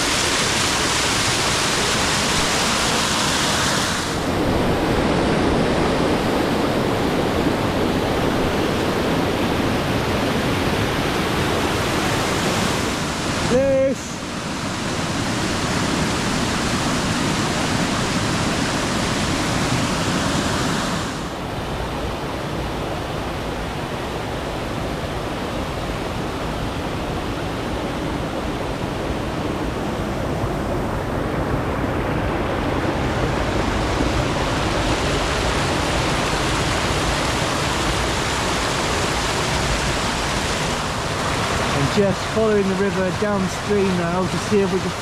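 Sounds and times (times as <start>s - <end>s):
waterfall roaring: 0.0s - 45.0s.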